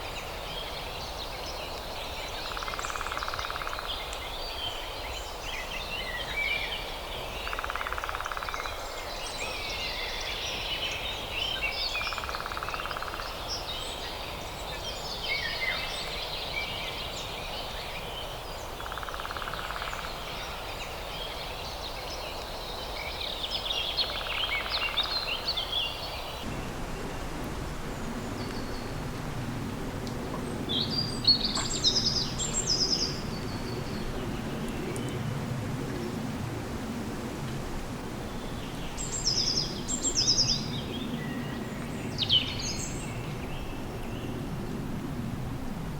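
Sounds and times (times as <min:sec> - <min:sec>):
wild birds chirping: 0:00.0 - 0:29.1, 0:30.2 - 0:35.4.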